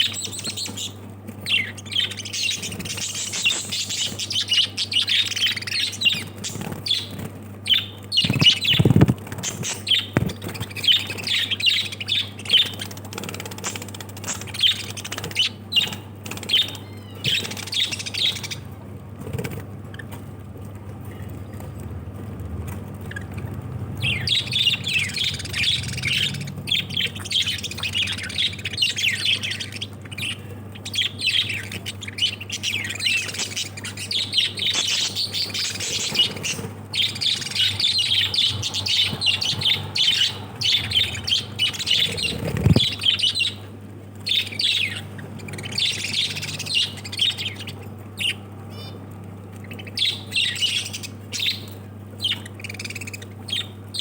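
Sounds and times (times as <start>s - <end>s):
lovebirds chattering and squawking: 0.0s - 54.0s
steady low hum: 0.0s - 54.0s.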